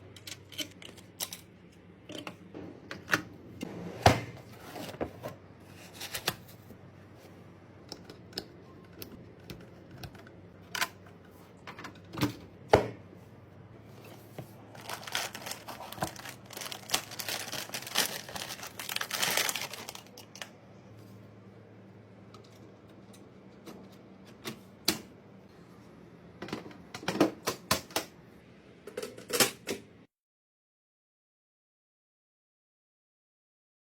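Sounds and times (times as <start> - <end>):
rustling: 13.9 - 20.2.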